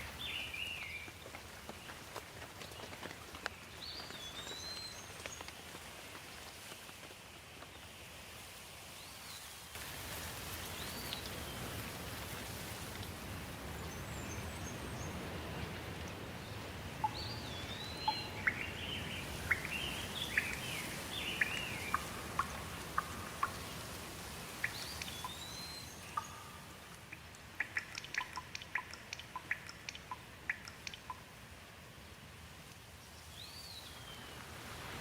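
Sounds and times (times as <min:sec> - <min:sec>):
rain hiss: 0:00.0 - 0:35.0
sharp ticks and chirps: 0:17.0 - 0:31.4.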